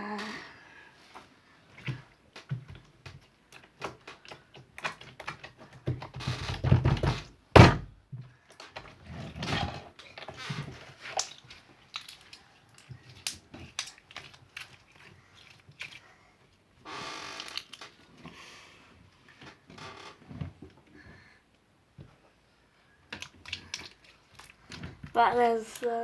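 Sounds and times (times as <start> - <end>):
slime squelching: 1.1 - 6.0, 9.9 - 18.5, 22.9 - 26.0
loud thump: 7.6 - 7.9.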